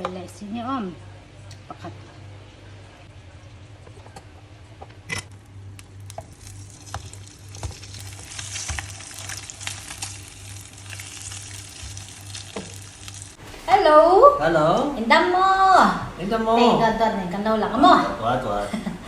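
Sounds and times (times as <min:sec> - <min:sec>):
steady low hum: 0:00.0 - 0:19.0
food wrapping crackling and rustling: 0:05.2 - 0:13.8.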